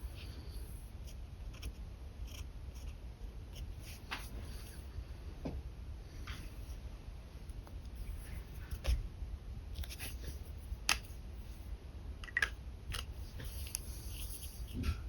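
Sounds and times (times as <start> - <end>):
pen scratching on paper: 1.0 - 4.7.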